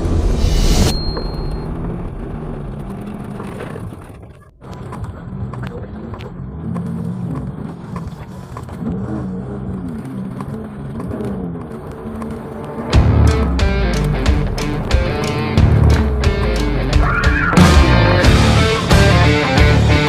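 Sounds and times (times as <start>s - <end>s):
off-road vehicle engine revving: 2.0s - 20.0s
background music: 12.5s - 20.0s.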